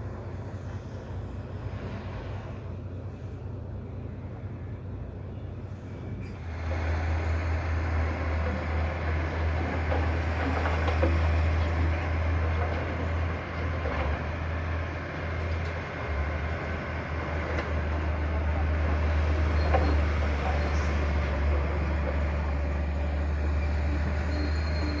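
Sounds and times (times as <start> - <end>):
bulldozer diesel engine: 0.0 - 25.0
steel tracks clattering: 15.5 - 25.0.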